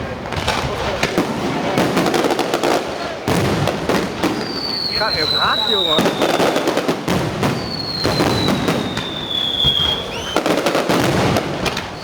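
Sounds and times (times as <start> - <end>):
fireworks crackling bursts: 0.0 - 12.0
falling firework whistle: 4.2 - 12.0.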